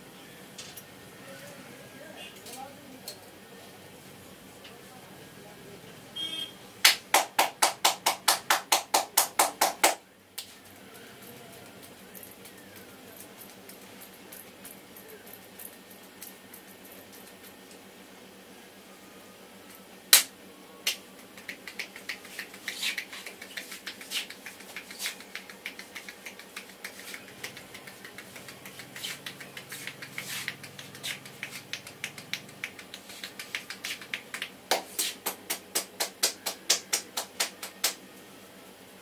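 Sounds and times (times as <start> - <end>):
hands slapping and tapping head: 6.8 - 10.6, 20.1 - 38.0.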